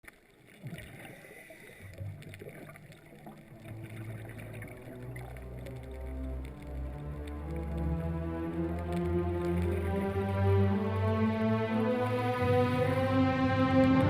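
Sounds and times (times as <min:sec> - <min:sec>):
water: 0:00.0 - 0:14.0
boat noise: 0:01.0 - 0:14.0
low held music notes: 0:03.4 - 0:14.0.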